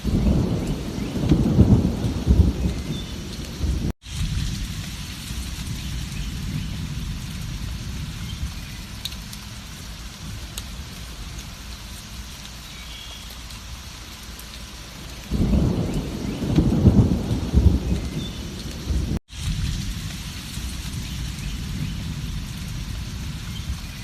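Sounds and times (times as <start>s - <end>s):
rolling thunder: 0.0s - 9.4s, 15.2s - 24.0s
steady rain: 0.0s - 24.0s.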